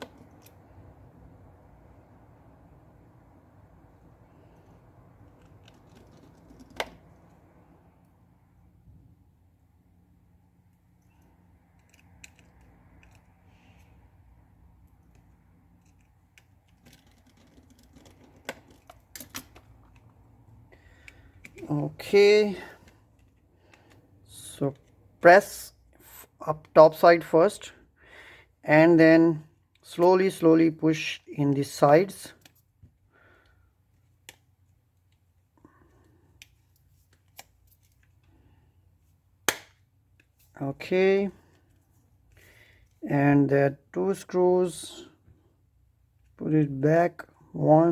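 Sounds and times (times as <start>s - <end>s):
small clicks and taps of phone parts: 0.0s - 0.6s, 4.6s - 7.4s, 10.7s - 13.9s, 14.8s - 20.2s, 39.4s - 40.3s.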